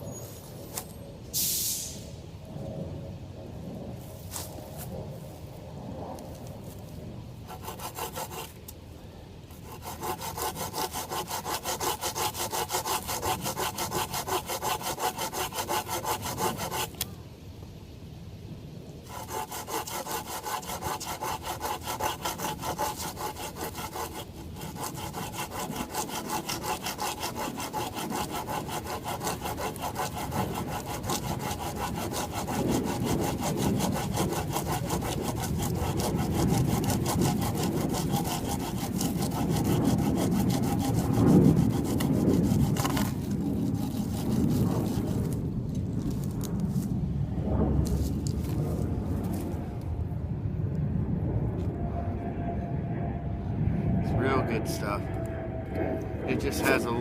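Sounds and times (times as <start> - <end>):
hand saw cutting branch: 7.4 - 8.8, 9.5 - 17.1, 19.0 - 45.4.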